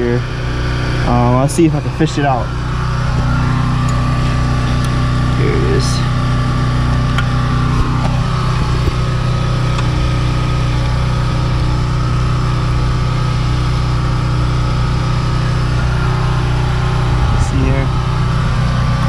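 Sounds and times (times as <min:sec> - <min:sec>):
motor running steadily: 0:00.0 - 0:19.0.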